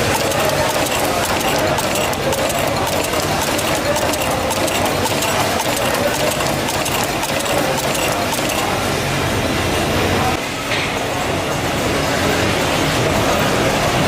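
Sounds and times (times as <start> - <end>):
workshop machine clattering: 0.0 - 9.3.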